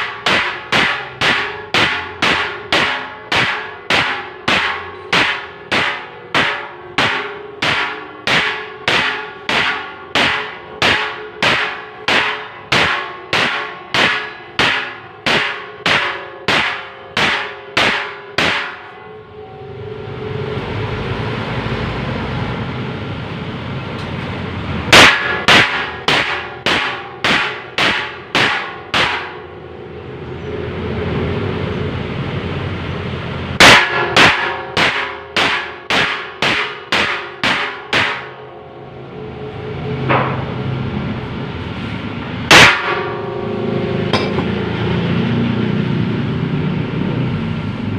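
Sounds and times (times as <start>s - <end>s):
ringing metal clangs: 0.0s - 20.0s, 42.5s - 44.8s
steady machine drone: 0.0s - 47.9s.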